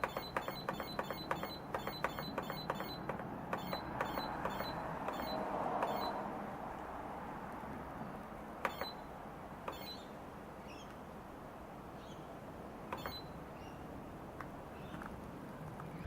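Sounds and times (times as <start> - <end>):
short high electronic beep: 0.1 - 6.2.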